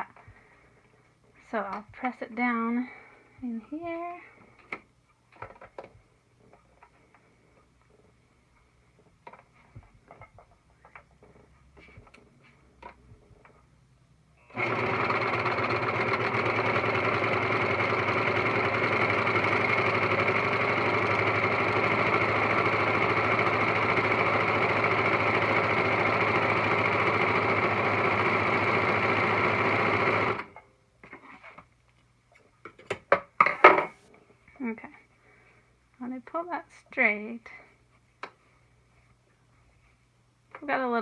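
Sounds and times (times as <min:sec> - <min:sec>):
overlocker sewing machine running: 0:14.5 - 0:30.6.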